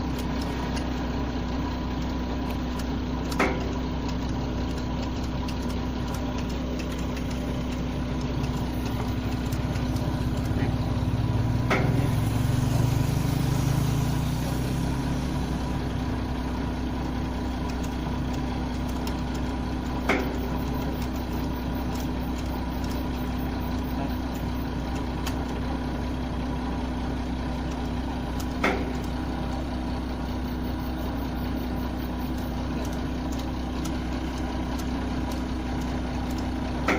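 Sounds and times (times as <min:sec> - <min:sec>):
excavator diesel engine running: 0:00.0 - 0:36.9.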